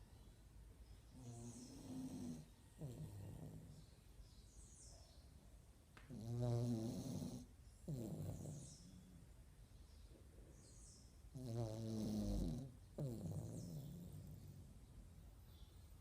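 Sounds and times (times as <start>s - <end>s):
dog snoring: 1.1s - 3.9s, 6.1s - 9.0s, 11.3s - 14.7s.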